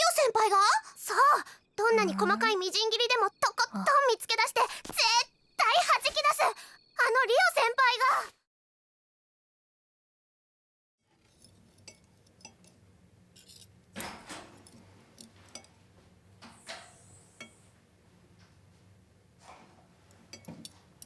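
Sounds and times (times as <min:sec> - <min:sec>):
dishes and cutlery clinking: 0:11.2 - 0:17.7, 0:19.4 - 0:21.0.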